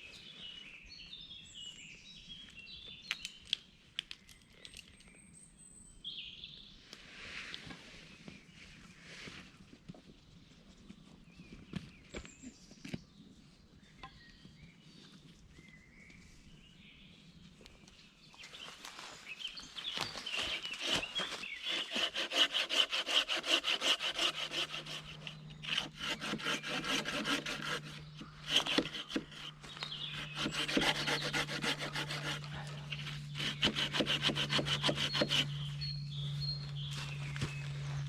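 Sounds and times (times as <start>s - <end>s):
hand saw cutting wood: 20.2s - 35.9s
steady low hum: 23.0s - 38.0s.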